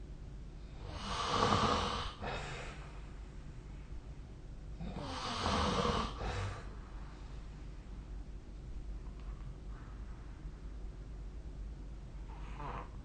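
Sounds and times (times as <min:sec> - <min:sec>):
person snoring: 0:00.8 - 0:02.5, 0:04.8 - 0:06.7.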